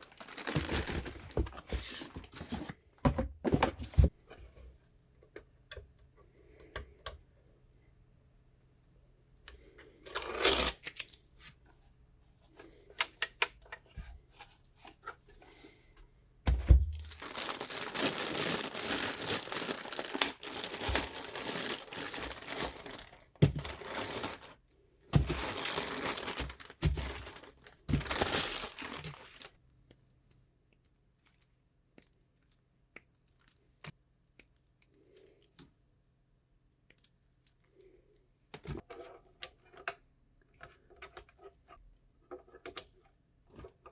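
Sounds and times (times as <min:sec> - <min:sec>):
packaging crinkling and tearing: 0:00.0 - 0:02.2, 0:10.1 - 0:11.1, 0:16.9 - 0:24.6, 0:25.2 - 0:29.6.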